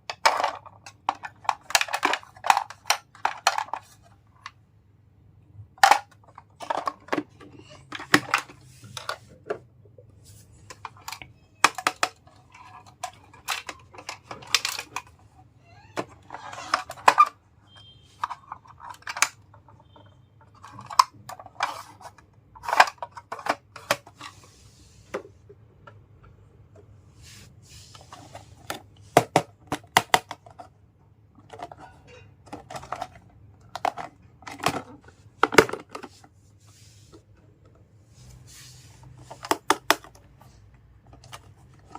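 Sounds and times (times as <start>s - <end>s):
plastic pieces clicking and tapping: 0.0s - 4.6s, 10.7s - 15.2s, 28.1s - 30.7s, 31.4s - 36.2s, 39.2s - 40.4s.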